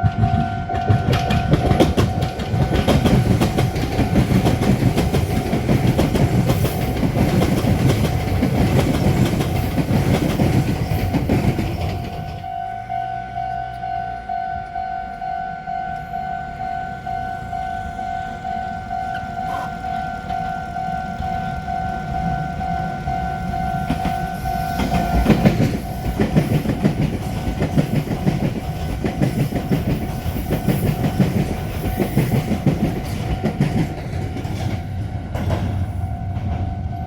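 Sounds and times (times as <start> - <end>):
train wheels clattering over rail joints: 0.0 - 12.5, 23.8 - 36.8
crossing warning bell ringing: 0.0 - 37.0.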